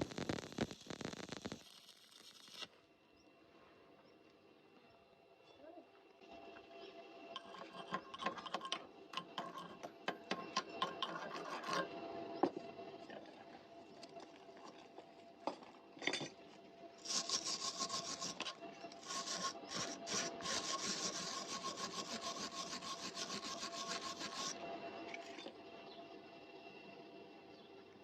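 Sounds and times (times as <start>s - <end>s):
hand tool scraping steel: 7.4s - 16.4s, 17.0s - 25.6s.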